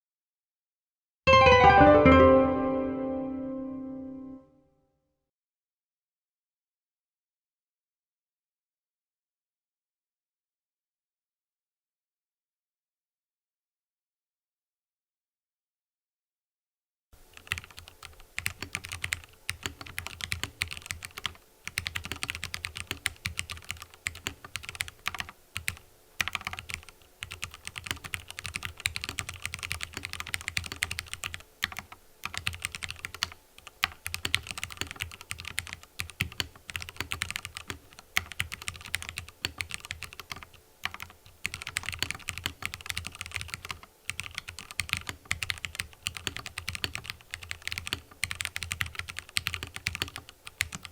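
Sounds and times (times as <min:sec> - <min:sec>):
mechanical keyboard typing: 0:17.3 - 0:50.9.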